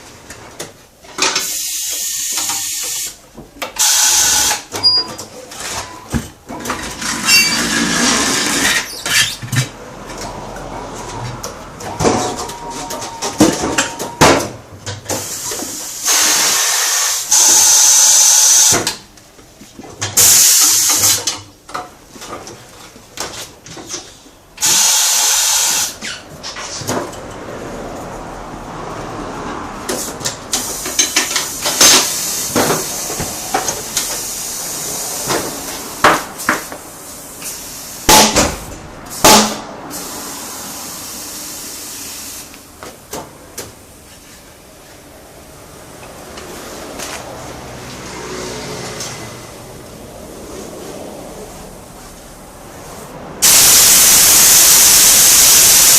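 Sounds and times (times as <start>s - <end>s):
compressed air hissing: 1.4s - 3.2s, 15.2s - 18.7s, 24.6s - 26.0s, 39.1s - 42.5s, 53.4s - 55.9s.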